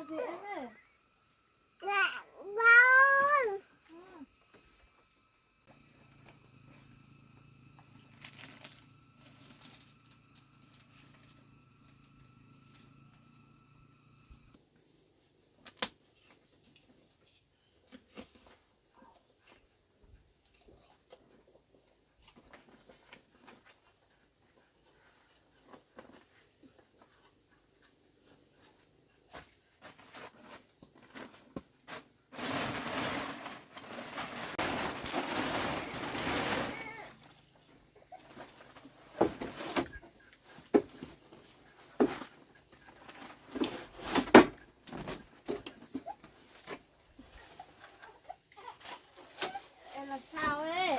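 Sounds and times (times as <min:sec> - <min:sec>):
insects chirping: 0:00.0 - 0:50.9
loud rustling or scraping: 0:31.9 - 0:37.2.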